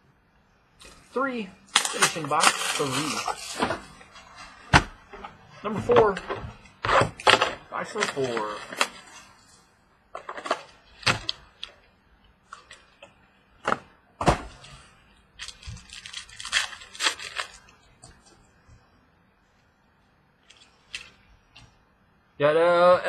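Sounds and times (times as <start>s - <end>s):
cardboard and wrapper rustling: 1.7s - 11.8s, 13.6s - 18.4s.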